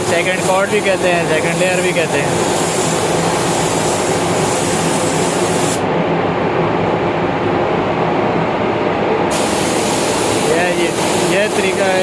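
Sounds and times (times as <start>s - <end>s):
spray gun hissing: 0.0s - 5.8s, 9.3s - 12.0s
fans humming: 0.0s - 12.0s.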